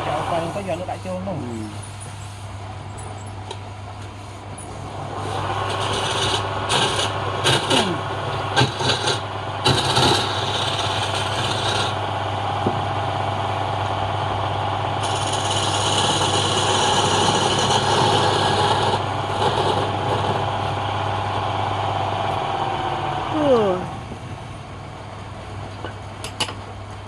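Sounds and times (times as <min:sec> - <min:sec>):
woodworking machine motor: 0:04.8 - 0:23.4
hissing of wood being cut: 0:05.0 - 0:11.9.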